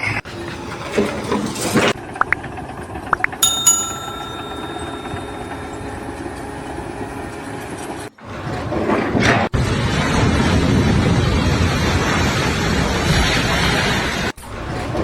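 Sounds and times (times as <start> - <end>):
sharp metallic clang: 3.4 - 6.0.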